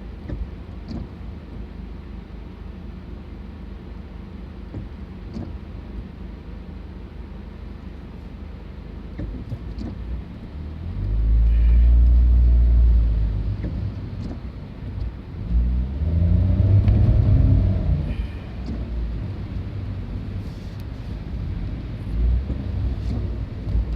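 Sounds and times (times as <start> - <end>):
vehicle engine rumble passing: 10.0 - 23.9.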